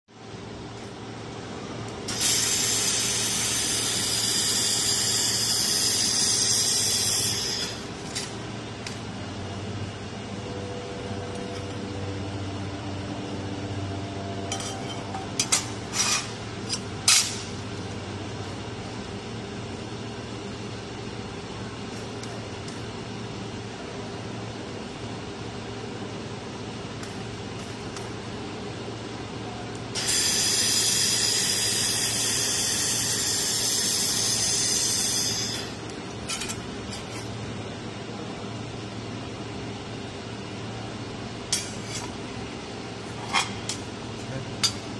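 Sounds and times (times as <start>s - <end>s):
steady machine hum: 0.1s - 44.9s
laser welder humming: 1.9s - 18.0s, 29.9s - 36.0s.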